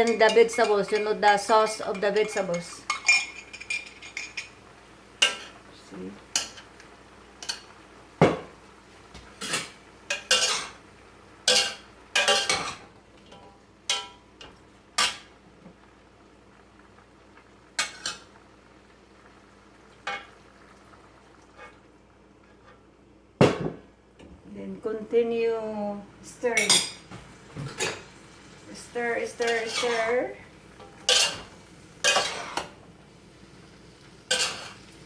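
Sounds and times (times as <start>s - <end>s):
utensil scraping against a pan: 29.2s - 32.7s, 34.3s - 34.9s.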